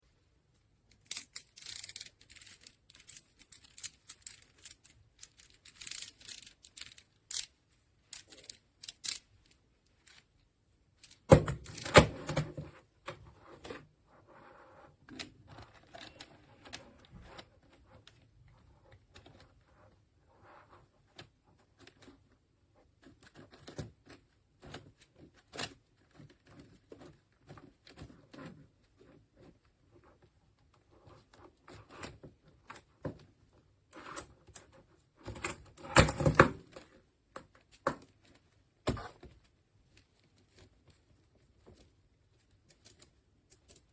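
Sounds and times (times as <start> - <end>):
handling clicks and rustles: 0.2 - 13.7, 34.0 - 43.9.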